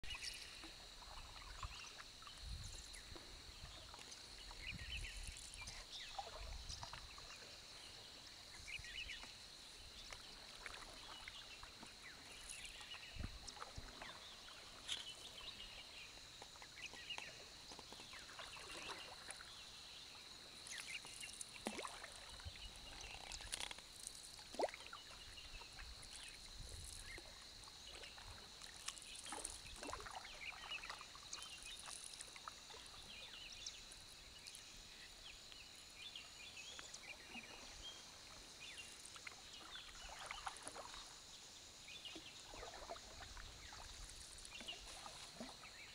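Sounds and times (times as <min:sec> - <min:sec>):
faint river ambience: 0:00.0 - 0:45.9.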